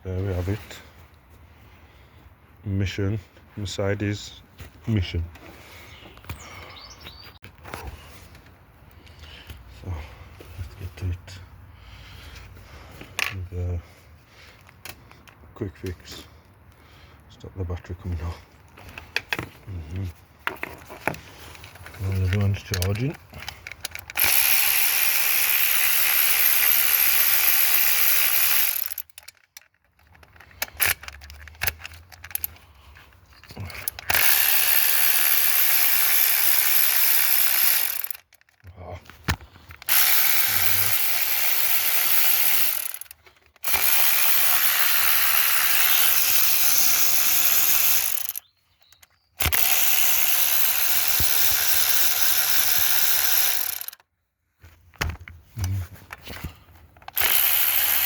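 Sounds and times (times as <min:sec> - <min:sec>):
power tool running: 0:23.4 - 0:29.1, 0:34.1 - 0:38.2, 0:39.8 - 0:48.4, 0:49.4 - 0:54.0, 0:57.1 - 0:58.0.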